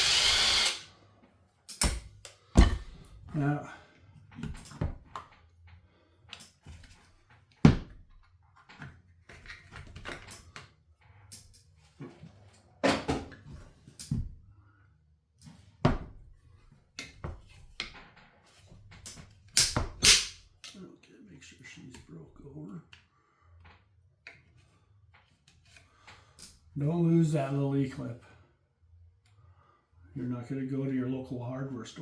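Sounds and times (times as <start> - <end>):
hand tools and metal parts clattering: 1.7 - 3.2.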